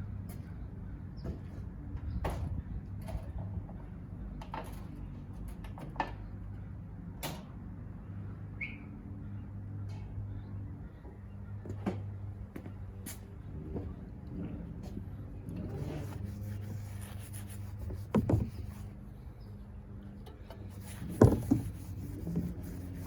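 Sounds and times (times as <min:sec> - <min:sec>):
steady low hum: 0:00.0 - 0:23.0
brief squeak: 0:08.6 - 0:08.9.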